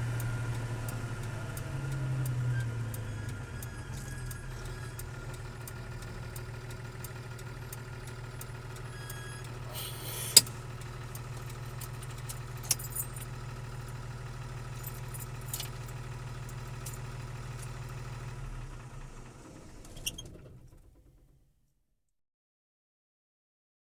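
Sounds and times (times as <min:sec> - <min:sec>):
diesel truck engine droning: 0:00.0 - 0:21.2
light clicks and rattles: 0:09.5 - 0:13.4.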